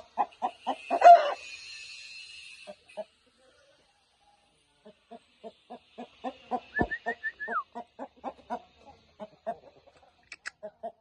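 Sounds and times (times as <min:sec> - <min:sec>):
chickens clucking: 0:00.0 - 0:01.3, 0:04.8 - 0:11.0.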